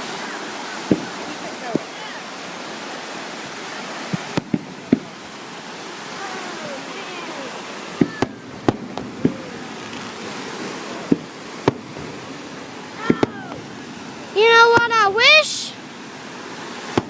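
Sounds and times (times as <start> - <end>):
ocean surf: 0.0 - 17.0
fireworks bangs: 0.8 - 2.2, 4.0 - 7.1, 7.9 - 17.0.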